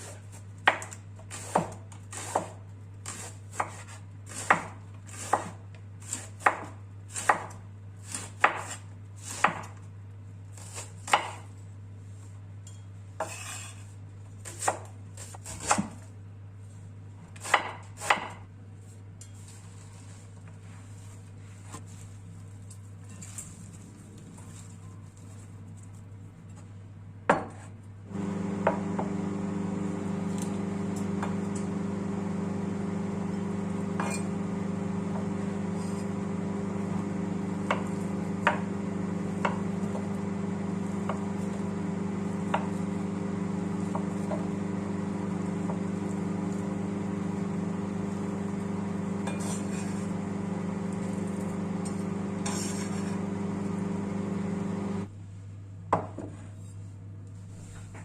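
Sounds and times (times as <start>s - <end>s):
microwave oven humming: 28.1s - 55.1s.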